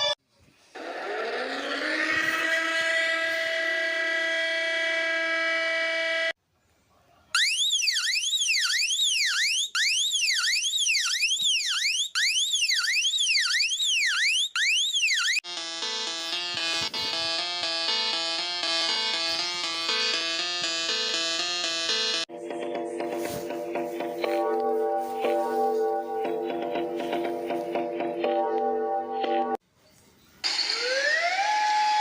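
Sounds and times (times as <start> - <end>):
electronic siren sweeping: 0.8 - 6.4, 7.4 - 22.3, 30.4 - 32.0
rising siren tone: 0.8 - 6.4, 7.4 - 22.3, 30.5 - 32.0.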